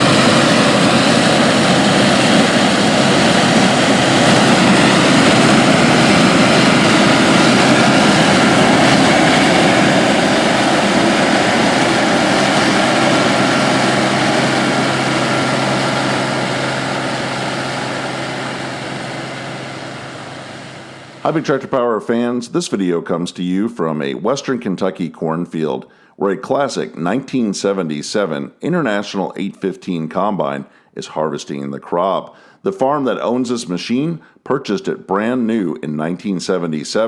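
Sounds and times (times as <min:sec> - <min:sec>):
combine harvester engine drone: 0:00.0 - 0:21.6.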